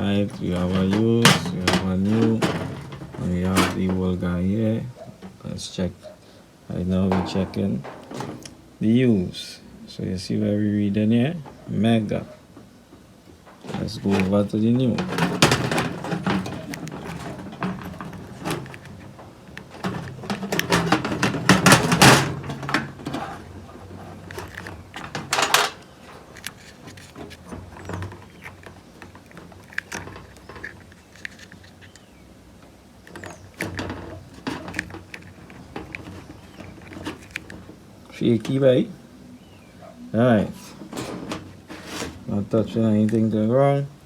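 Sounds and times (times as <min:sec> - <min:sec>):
clicks taps and rustling: 0:00.0 - 0:39.1, 0:39.8 - 0:44.0
low steady hum: 0:00.0 - 0:44.0.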